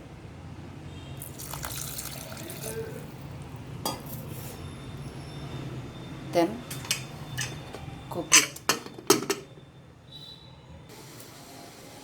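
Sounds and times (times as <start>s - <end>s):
water pouring into a pan: 1.2s - 3.2s.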